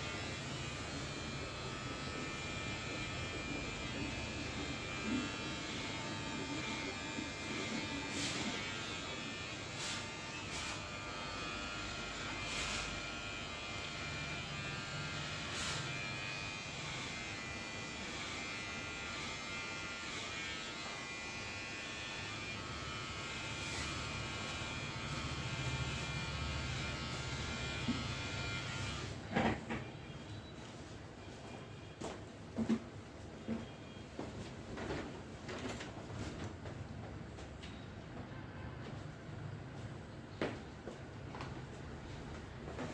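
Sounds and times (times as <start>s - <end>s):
electric hair clipper buzzing: 0.0s - 29.2s.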